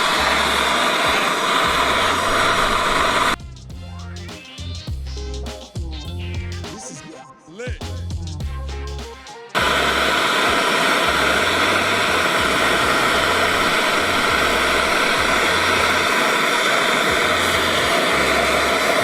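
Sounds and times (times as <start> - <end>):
gas torch flame hissing: 0.0 - 3.4, 9.6 - 19.0
background music bass line: 3.4 - 16.1.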